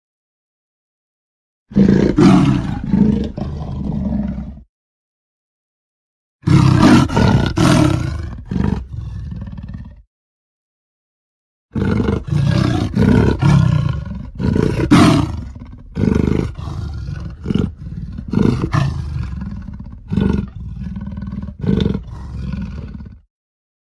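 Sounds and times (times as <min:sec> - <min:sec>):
leopard harsh calls: 0:06.5 - 0:09.0, 0:11.8 - 0:23.0.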